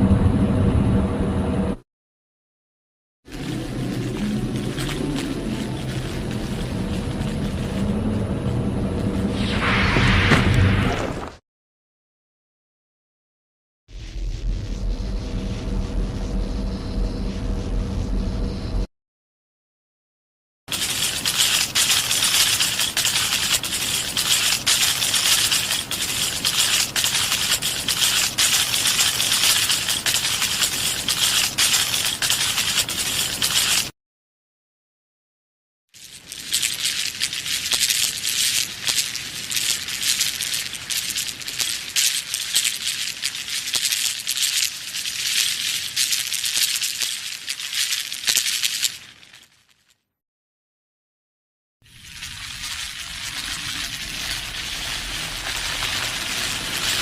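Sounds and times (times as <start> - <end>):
high-pitched rattling and crackling: 3.3 - 10.0, 20.7 - 33.9, 36.0 - 50.0, 51.9 - 57.0
harsh crackling hiss: 53.0 - 57.0.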